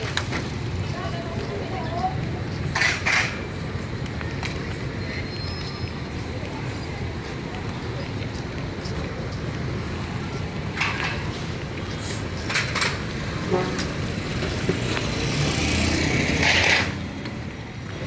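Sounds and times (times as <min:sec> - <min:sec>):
road traffic rumble: 0:00.0 - 0:18.0
traffic hissing: 0:08.6 - 0:17.9.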